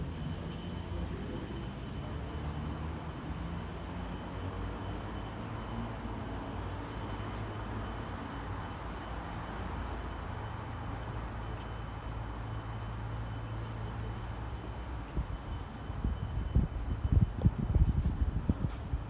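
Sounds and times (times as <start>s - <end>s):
traffic rumble: 0.0s - 19.0s
faint steady high tone: 11.5s - 17.4s.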